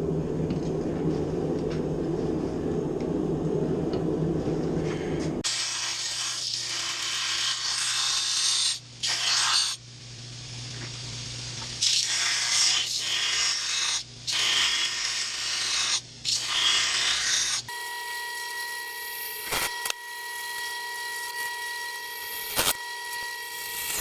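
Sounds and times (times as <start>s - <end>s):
steady low hum: 0.0s - 5.6s, 8.8s - 17.8s
hiss of blasting air and grit: 5.4s - 9.8s, 10.8s - 17.7s.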